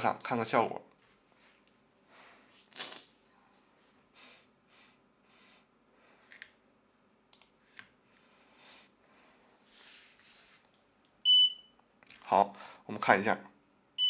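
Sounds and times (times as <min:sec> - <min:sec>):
computer mouse clicks: 0:07.3 - 0:07.9
soft noises: 0:07.5 - 0:11.0.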